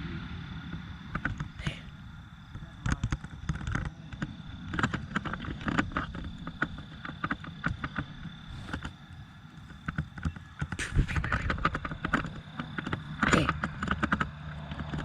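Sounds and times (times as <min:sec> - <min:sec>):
low rumble: 0:00.0 - 0:06.4.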